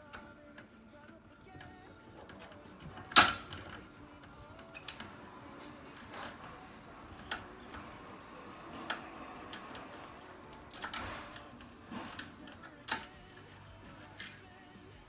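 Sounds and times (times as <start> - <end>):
metal clicks and taps: 1.5 - 3.8.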